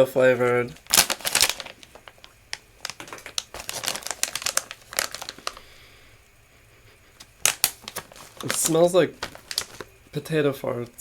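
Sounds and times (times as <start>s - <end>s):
plastic snack bag crinkling: 0.4s - 5.8s, 7.2s - 10.0s.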